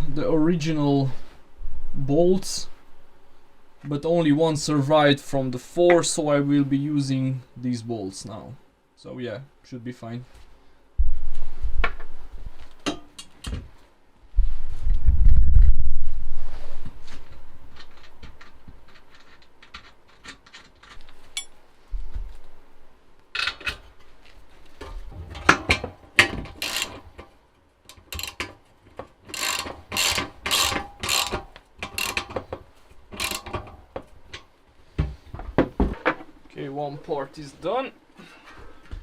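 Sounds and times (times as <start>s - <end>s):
ratchet wrench clicking: 26.2s - 27.0s, 27.9s - 28.5s, 29.3s - 32.4s, 33.2s - 33.8s.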